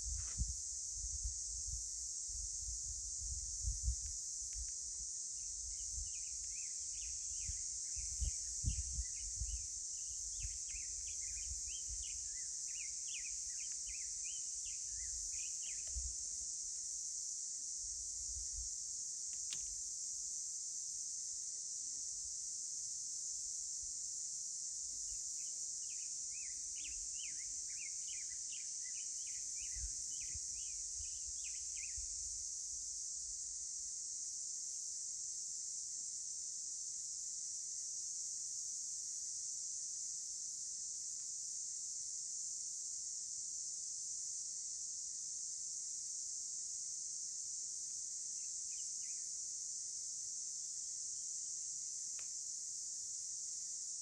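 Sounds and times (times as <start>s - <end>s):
wind rumbling on microphone: 0.0s - 4.7s, 7.0s - 12.4s
insects droning: 0.0s - 54.0s.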